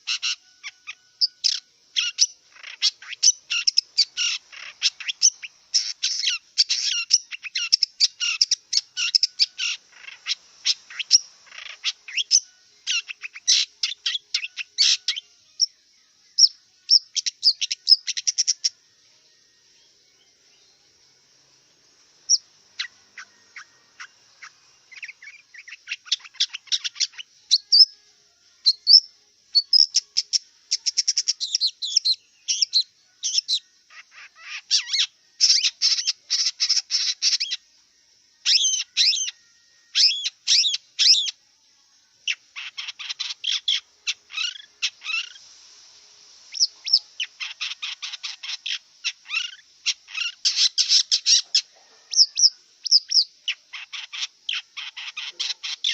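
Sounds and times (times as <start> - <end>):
shrike harsh chattering song: 46.5 - 55.9.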